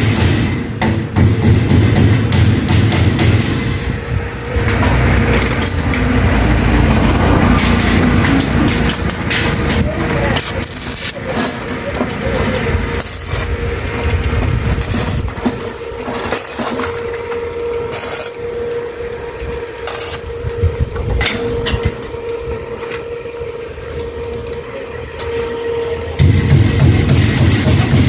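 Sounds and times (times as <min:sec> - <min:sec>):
welding arc crackling: 0:06.0 - 0:15.9, 0:17.0 - 0:21.0.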